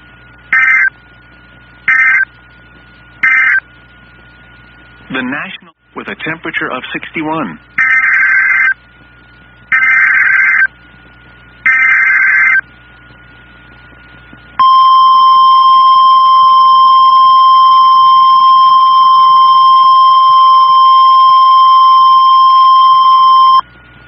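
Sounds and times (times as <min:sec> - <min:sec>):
steady warning alarm tone: 0:14.6 - 0:23.6.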